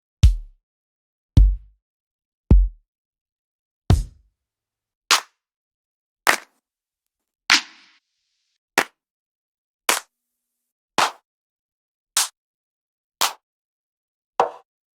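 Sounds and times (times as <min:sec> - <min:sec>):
kick drum hits: 0:00.2 - 0:00.6, 0:01.4 - 0:01.7, 0:02.5 - 0:02.8, 0:03.9 - 0:04.2.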